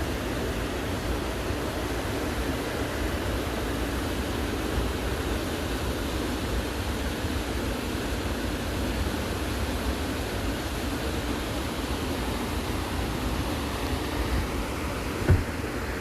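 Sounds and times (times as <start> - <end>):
steady rushing noise: 0.0 - 16.0.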